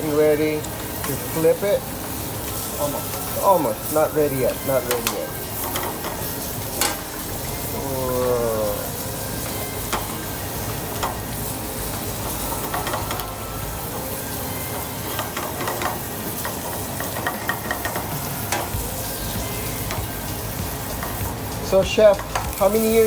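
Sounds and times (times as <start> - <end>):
fish sizzling in a frying pan: 0.0 - 23.0.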